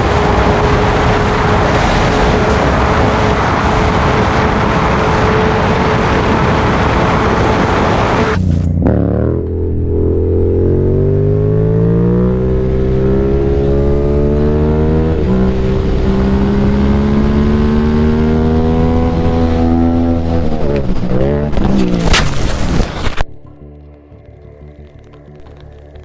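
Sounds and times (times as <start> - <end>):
short loud blast of noise: 0.0 - 8.8
vehicle engine accelerating: 0.0 - 23.4.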